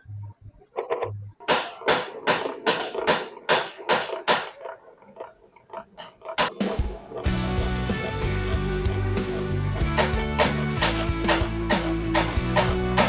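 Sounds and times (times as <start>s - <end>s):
hammer strikes: 1.5s - 4.6s.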